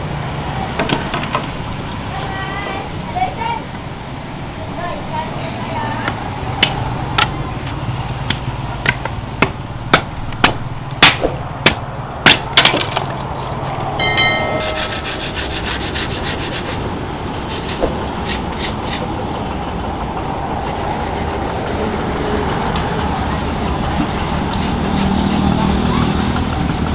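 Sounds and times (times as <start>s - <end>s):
steady rubbing: 13.3s - 19.1s, 20.5s - 26.9s
brief ringing tone: 14.0s - 15.1s.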